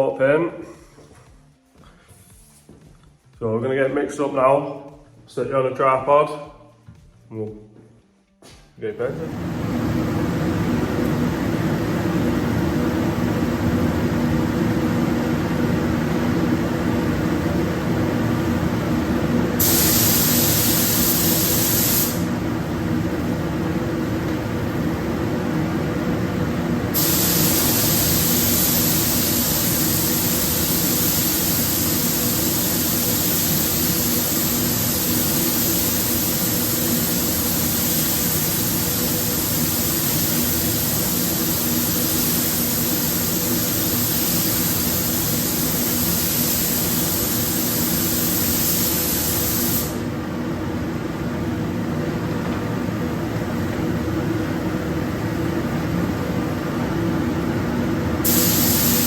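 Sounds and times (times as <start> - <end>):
spray gun hissing: 19.6 - 22.3, 26.9 - 50.0, 58.2 - 59.0.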